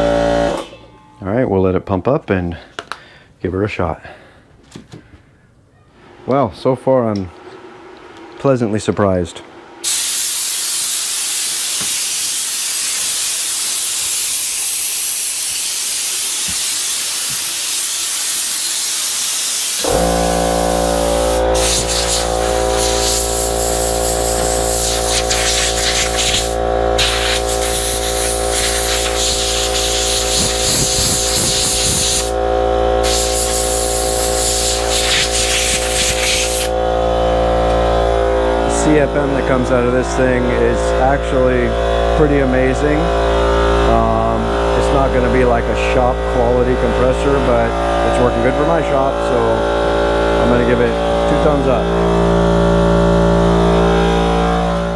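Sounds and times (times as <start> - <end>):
air compressor motor humming: 0.0 - 0.8, 9.6 - 54.9
compressed air hissing: 9.8 - 36.9.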